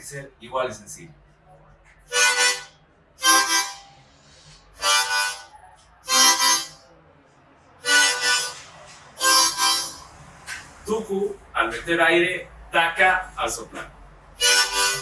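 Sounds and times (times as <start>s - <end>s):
harmonica chords in train rhythm: 2.1s - 6.8s, 7.8s - 10.1s, 14.4s - 15.0s.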